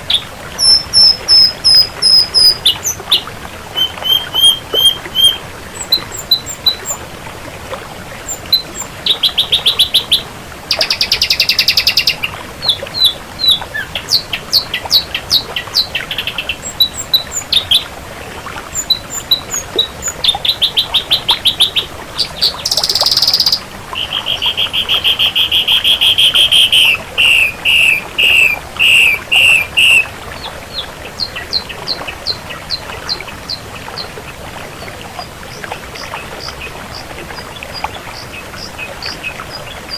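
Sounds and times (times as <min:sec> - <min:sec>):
bird singing whistles and trills: 0:00.1 - 0:07.0, 0:08.3 - 0:17.8, 0:18.8 - 0:32.4.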